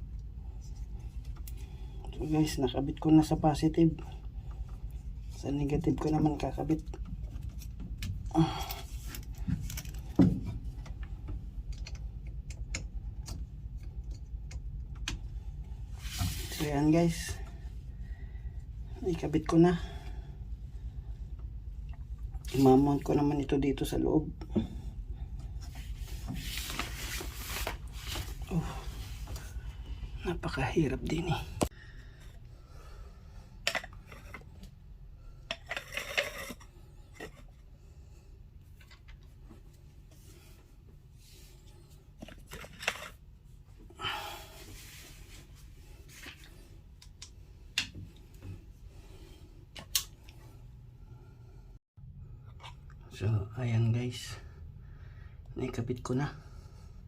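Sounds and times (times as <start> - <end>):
wire connectors clicking and rattling: 5.7 - 15.7, 33.6 - 34.8.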